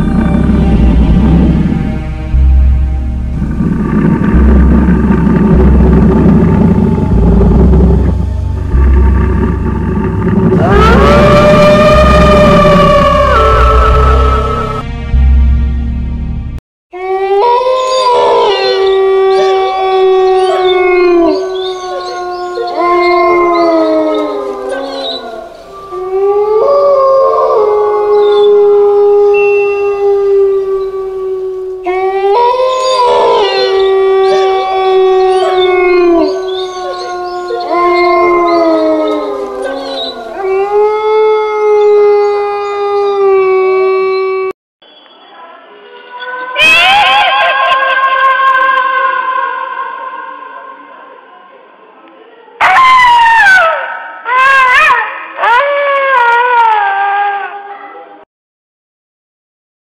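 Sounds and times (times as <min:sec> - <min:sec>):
wolves howling in chorus: 0:10.5 - 0:14.6, 0:17.2 - 0:43.4.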